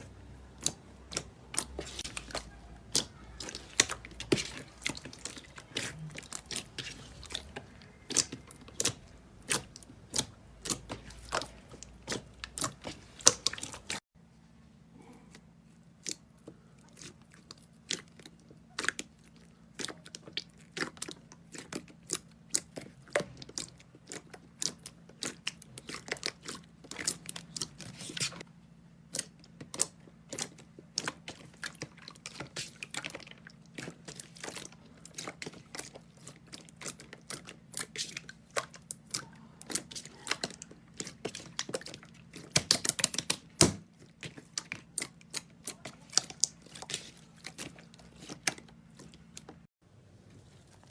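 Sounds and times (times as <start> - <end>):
slime squishing with sticky crackles: 0.0 - 14.1, 14.8 - 50.9.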